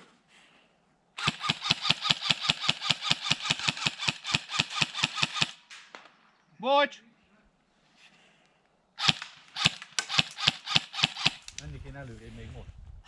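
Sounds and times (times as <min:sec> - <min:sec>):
airsoft rifle firing: 0:01.2 - 0:06.3, 0:09.0 - 0:11.6.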